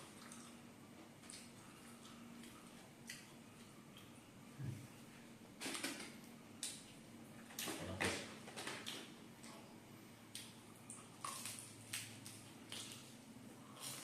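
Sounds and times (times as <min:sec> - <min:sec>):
person chewing food: 0:00.0 - 0:04.3, 0:10.3 - 0:14.0.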